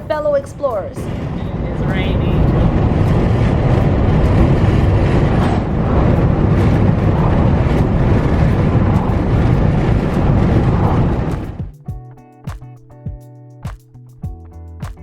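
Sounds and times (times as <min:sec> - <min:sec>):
heavy rain pouring: 0:00.0 - 0:11.7
sharp raindrop hits: 0:01.0 - 0:11.8.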